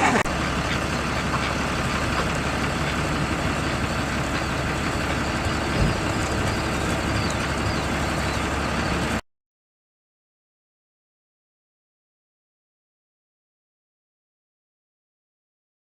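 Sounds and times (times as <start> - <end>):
outdoor low rumble: 0.0 - 9.2.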